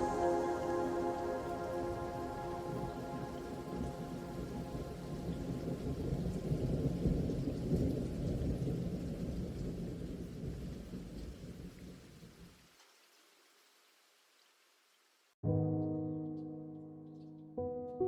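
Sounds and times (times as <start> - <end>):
rolling thunder: 0.0 - 12.0
rain: 0.0 - 15.4.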